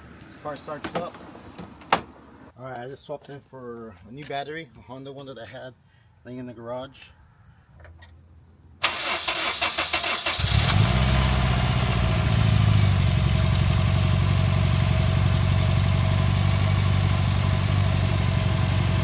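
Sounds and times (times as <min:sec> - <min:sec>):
engine cranking on starter: 0:08.8 - 0:11.8
car engine idling: 0:10.4 - 0:19.0.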